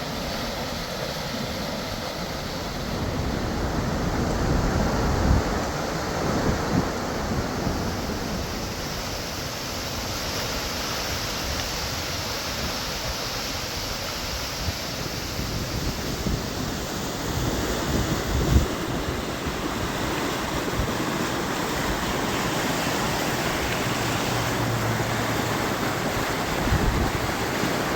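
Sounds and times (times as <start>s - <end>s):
flood water rushing: 0.0s - 27.9s
wind buffeting microphone: 2.8s - 9.1s, 14.6s - 27.9s.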